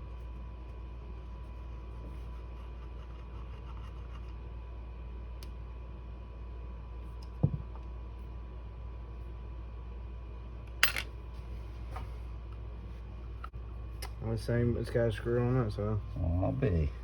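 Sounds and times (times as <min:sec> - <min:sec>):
steady low hum: 0:00.0 - 0:17.0
hands and tools scratching metal parts: 0:01.4 - 0:04.4
dull knock: 0:07.4 - 0:07.7.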